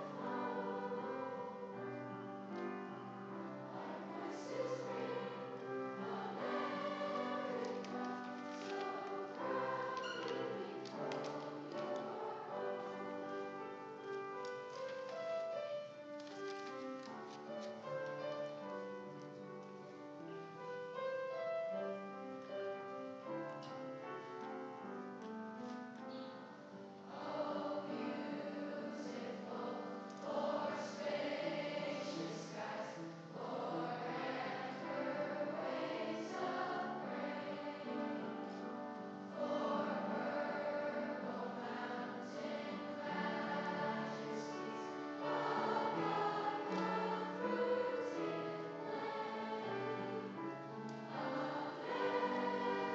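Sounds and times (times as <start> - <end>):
chorus singing: 0.0 - 2.6, 3.4 - 13.8, 27.1 - 52.9
piano playing: 0.0 - 52.9.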